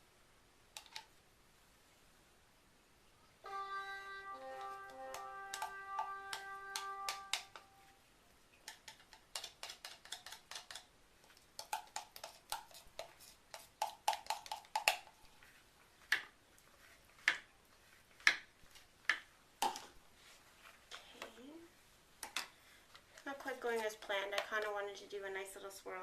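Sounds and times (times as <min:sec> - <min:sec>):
background music: 0:03.4 - 0:08.0
utensil tapping a container: 0:05.1 - 0:07.7, 0:08.6 - 0:10.9.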